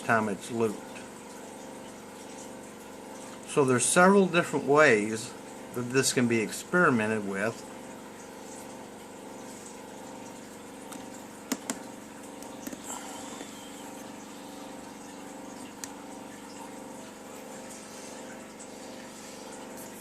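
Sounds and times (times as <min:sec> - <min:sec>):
electronic drone of held tones: 0:12.8 - 0:14.9.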